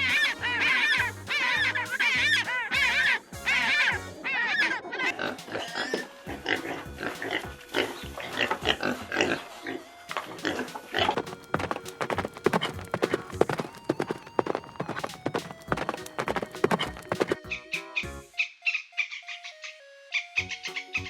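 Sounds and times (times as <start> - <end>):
pigs grunting: 0.0 - 9.8
faint background music: 0.0 - 21.0.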